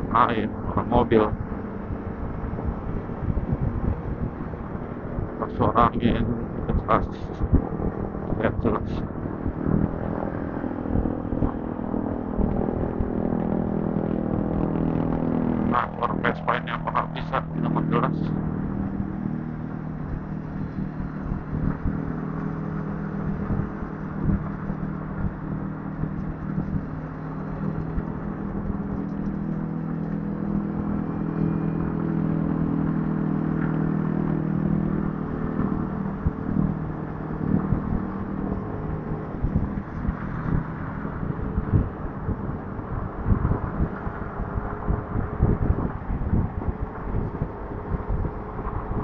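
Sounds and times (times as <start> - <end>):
wind buffeting microphone: 0.0 - 49.0
scooter engine running: 17.4 - 49.0.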